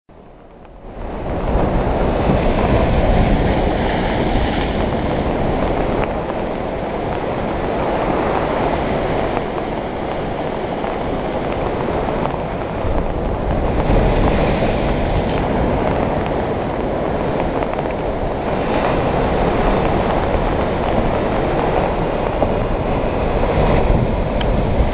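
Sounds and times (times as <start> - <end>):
sea waves breaking on a beach: 0.1 - 24.9.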